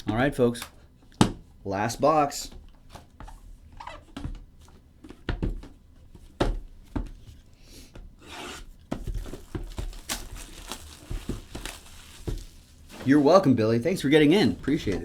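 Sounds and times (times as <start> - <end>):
wrapping rustling: 8.5 - 15.0.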